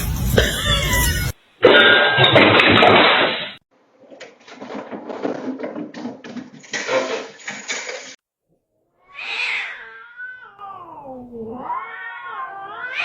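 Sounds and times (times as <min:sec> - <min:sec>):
cat yowling: 0:00.4 - 0:01.4, 0:09.0 - 0:13.0.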